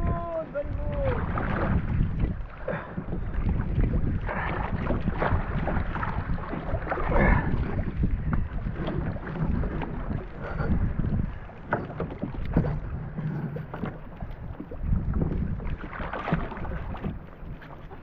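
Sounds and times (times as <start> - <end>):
water splashing around kayak: 0.0 - 18.0
wind on microphone: 0.0 - 18.0
knocks against hull: 10.6 - 17.2.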